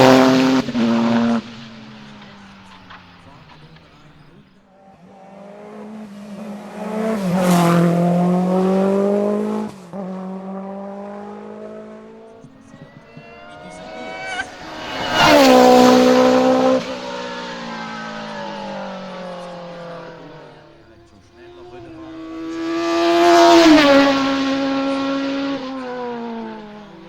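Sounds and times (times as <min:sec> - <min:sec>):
race car engine at high revs: 0:00.0 - 0:27.0.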